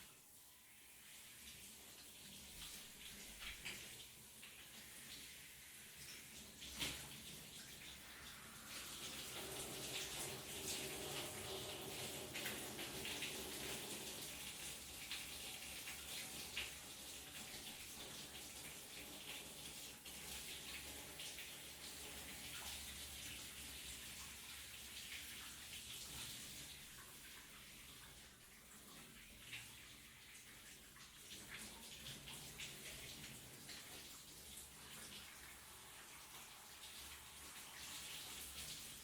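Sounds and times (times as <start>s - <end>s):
shower water spraying: 0.7s - 24.1s.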